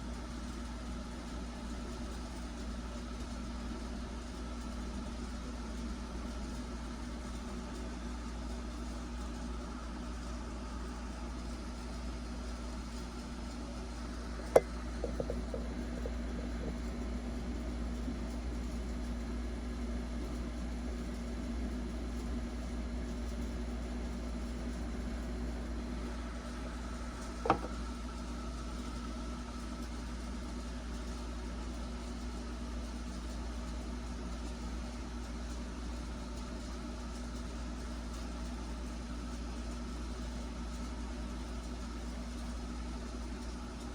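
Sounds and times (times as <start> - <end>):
steady low hum: 12.9 - 19.4, 25.6 - 29.6.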